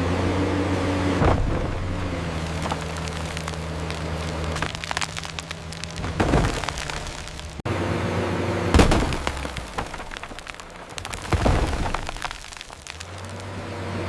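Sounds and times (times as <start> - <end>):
bulldozer engine running: 0.0 - 14.0
heavy cracking crashes: 1.2 - 7.6, 8.7 - 13.7
crackling and snapping: 2.1 - 7.6, 8.8 - 13.7.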